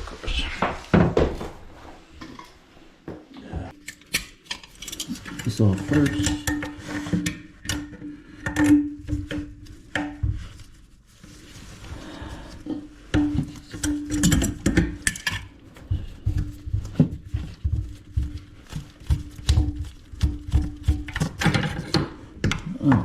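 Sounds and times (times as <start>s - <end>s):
tools and toilet parts clanking: 3.7s - 10.4s, 12.6s - 18.4s, 19.2s - 23.0s.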